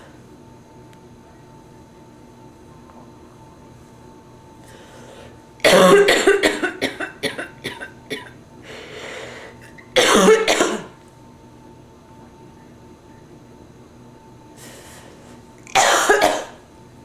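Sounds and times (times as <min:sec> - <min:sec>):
woman breathing in: 0:04.6 - 0:05.4, 0:08.6 - 0:09.6, 0:14.6 - 0:15.4
woman coughing: 0:05.6 - 0:08.4, 0:10.0 - 0:11.0, 0:15.7 - 0:16.6.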